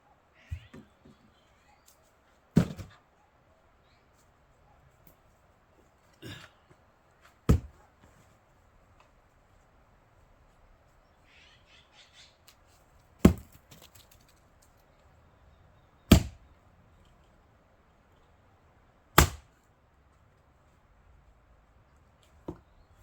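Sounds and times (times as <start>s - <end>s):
axe chopping firewood: 2.6s - 2.9s, 7.5s - 7.8s, 13.2s - 13.9s, 16.1s - 16.4s, 19.2s - 19.5s.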